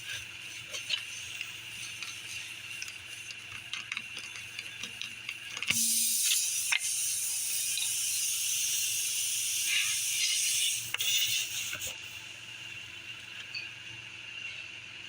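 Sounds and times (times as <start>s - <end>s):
air hissing from punctured tire: 5.8s - 12.2s.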